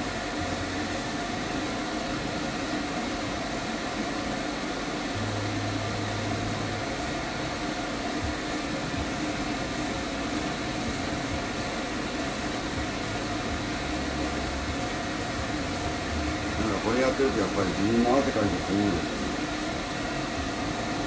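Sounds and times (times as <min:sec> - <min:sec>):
pet dryer blowing air: 0:00.0 - 0:21.0.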